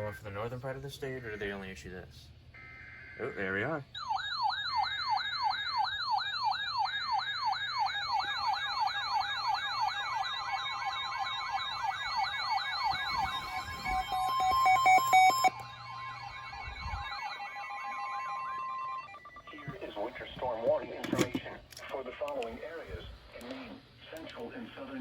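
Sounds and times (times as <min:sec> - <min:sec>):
siren-like alert sweep: 0:04.0 - 0:19.6
rapid electronic beeping: 0:04.8 - 0:20.5
electronic warble: 0:06.3 - 0:19.6
steady electronic tones: 0:06.5 - 0:20.6.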